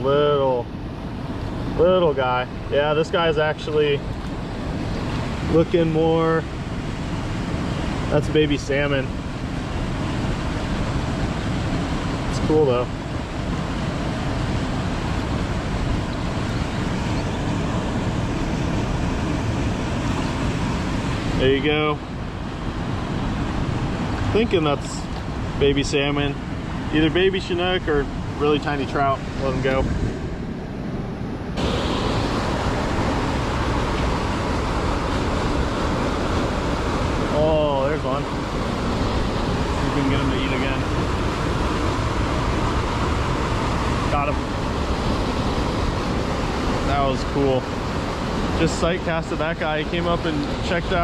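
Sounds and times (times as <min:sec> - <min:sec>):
fast creek water: 0:01.0 - 0:30.1, 0:31.6 - 0:51.0
waterfall rushing: 0:31.6 - 0:51.0.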